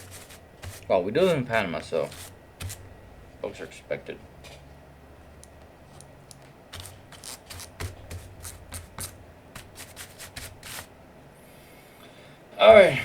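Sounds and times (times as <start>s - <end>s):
brush scrubbing keyboard switches: 0.0s - 2.9s, 5.9s - 10.9s.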